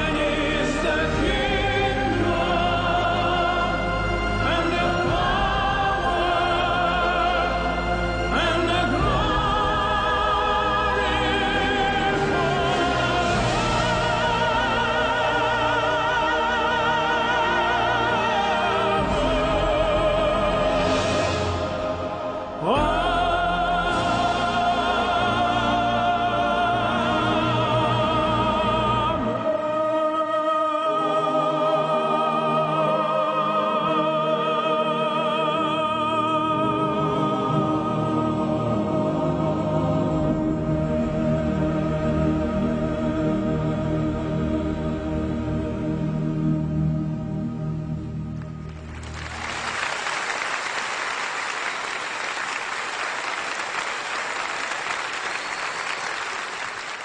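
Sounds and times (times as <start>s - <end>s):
operatic tenor singing: 0.0s - 48.2s
orchestral accompaniment: 0.0s - 49.8s
audience applause: 48.6s - 57.0s.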